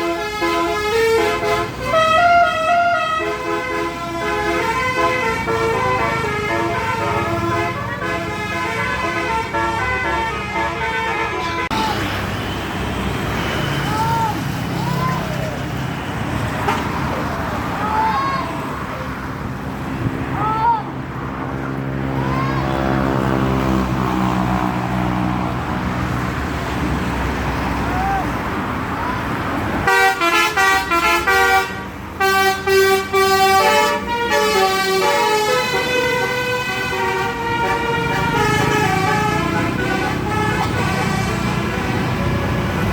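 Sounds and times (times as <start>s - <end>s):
musical bus air horn: 0.0s - 12.5s, 16.6s - 17.0s, 29.8s - 42.9s
road noise: 0.0s - 42.9s.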